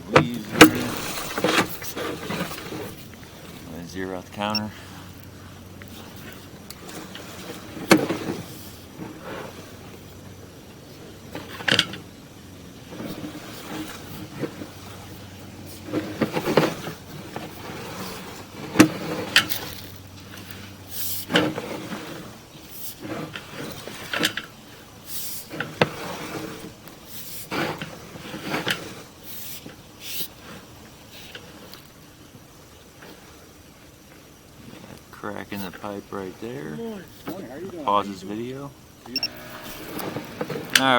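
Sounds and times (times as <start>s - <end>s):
camera scraping in drain pipe: 0.5s - 3.1s, 25.4s - 29.6s, 39.2s - 40.9s
faint low hum: 31.7s - 40.9s.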